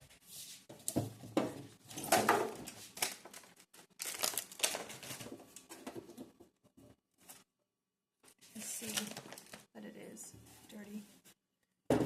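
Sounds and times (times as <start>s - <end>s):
plastic packaging crinkling: 2.4s - 5.4s, 8.6s - 9.7s.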